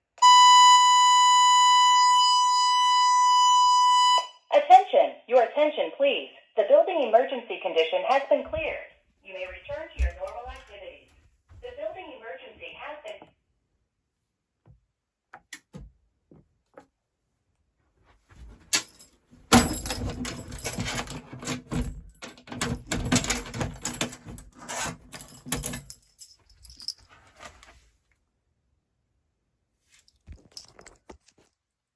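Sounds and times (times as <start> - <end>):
dense rattling and clattering: 19.5 - 25.9.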